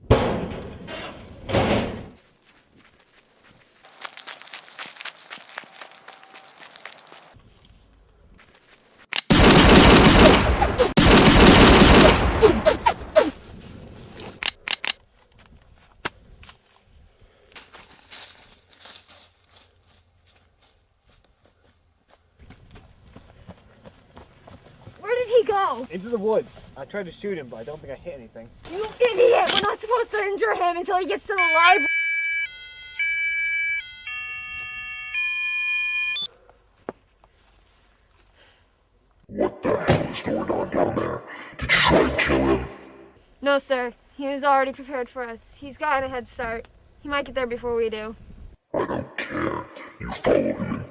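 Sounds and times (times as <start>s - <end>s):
single sharp gunshots: 9.2s - 13.3s
automatic gunfire burst: 9.3s - 13.2s
electronic beeping chord melody: 31.4s - 36.3s.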